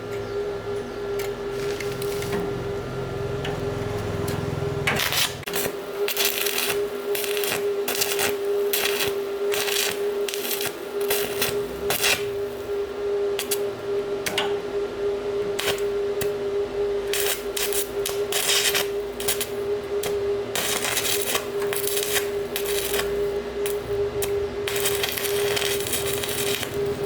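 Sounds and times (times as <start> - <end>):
steady hum: 0.0 - 27.0.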